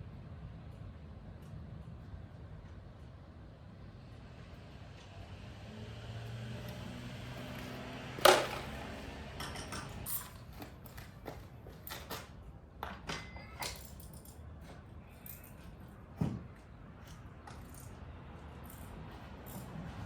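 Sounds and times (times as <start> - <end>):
plastic parts clacking: 8.2 - 8.8.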